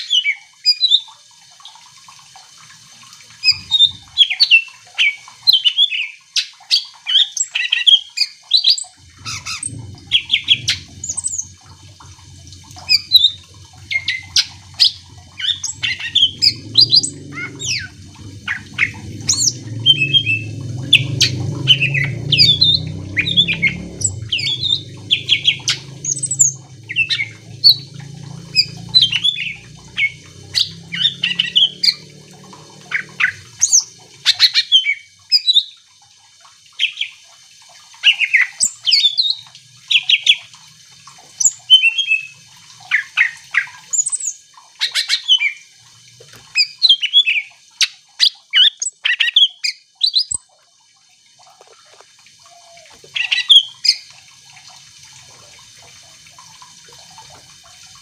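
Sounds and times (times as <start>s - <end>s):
low steady rumble: 3.0s - 4.2s, 8.9s - 35.4s
bird chirping and whistling: 12.8s - 17.9s, 18.5s - 27.9s, 28.5s - 32.0s, 48.2s - 50.4s.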